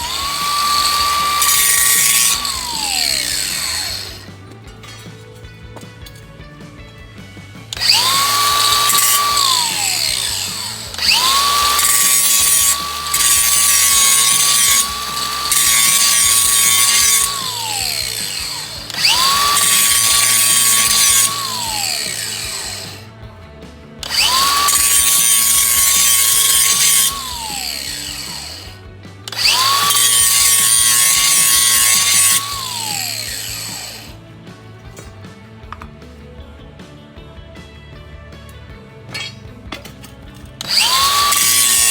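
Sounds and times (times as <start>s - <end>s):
power drill motor whining: 0.0s - 4.5s, 7.7s - 23.2s, 24.0s - 34.2s, 39.1s - 39.4s, 40.6s - 41.9s.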